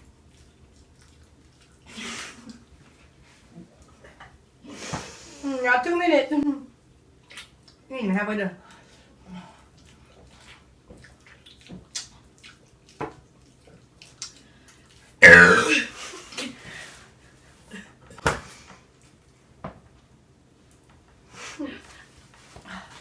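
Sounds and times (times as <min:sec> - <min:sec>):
mouth smacks while eating: 0:07.3 - 0:07.8, 0:09.8 - 0:15.6
loud burp: 0:15.2 - 0:15.9.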